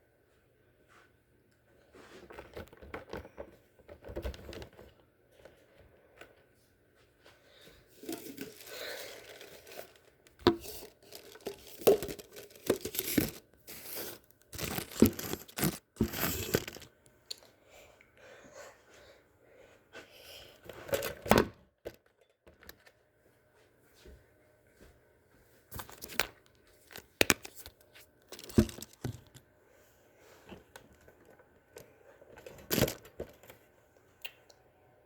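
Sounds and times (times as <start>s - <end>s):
rustling and crinkling handling: 1.8s - 17.2s, 24.8s - 29.6s, 30.3s - 33.7s.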